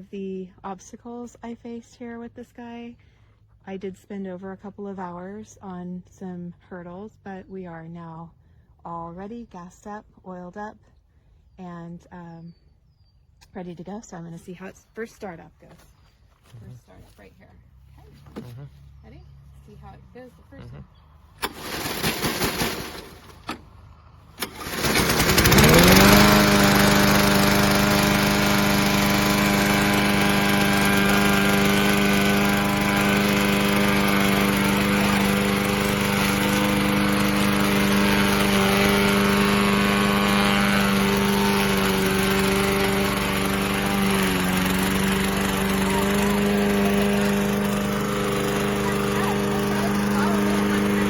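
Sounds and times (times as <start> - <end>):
lawn mower engine running: 21.3 - 51.0
lawn mower pull-starting: 21.3 - 51.0.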